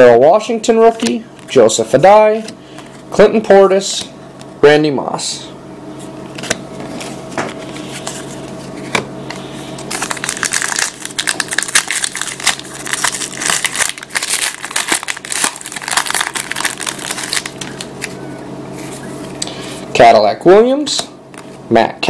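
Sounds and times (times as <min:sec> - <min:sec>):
card pack wrapper tearing and crinkling: 0:09.8 - 0:18.2.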